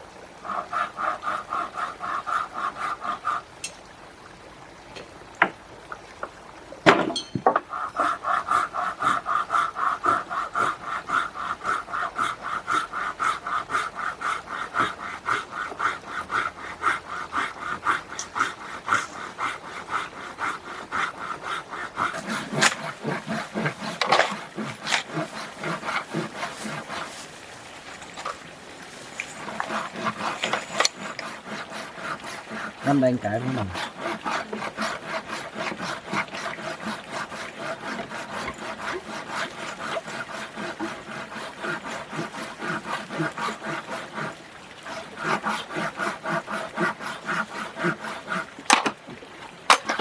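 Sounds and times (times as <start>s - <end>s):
hand saw cutting wood: 0.4s - 3.8s, 6.9s - 49.0s, 49.7s - 50.0s
knock: 6.8s - 7.6s.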